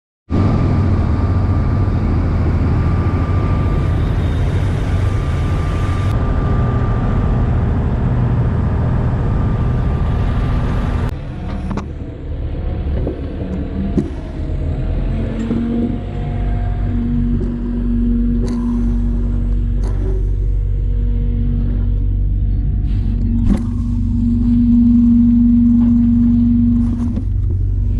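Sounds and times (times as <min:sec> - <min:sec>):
excavator diesel engine running: 0:00.3 - 0:27.9
thin steady whine: 0:00.3 - 0:27.9.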